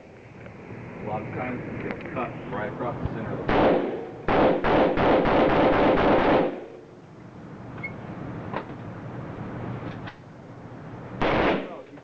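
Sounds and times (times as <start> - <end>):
automatic gunfire echoing indoors: 3.5 - 6.6.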